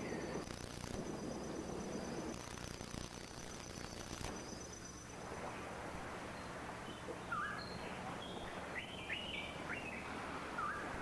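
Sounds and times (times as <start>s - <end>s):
insect trilling: 0.0s - 5.2s
bird whistling calls: 7.3s - 7.8s, 10.6s - 10.9s.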